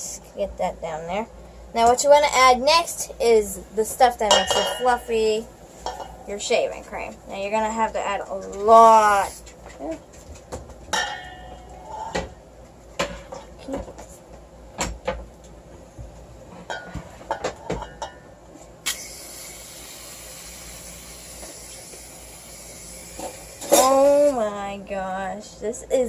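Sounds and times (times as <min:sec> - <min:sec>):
aerosol can spraying hiss: 0:18.9 - 0:23.8.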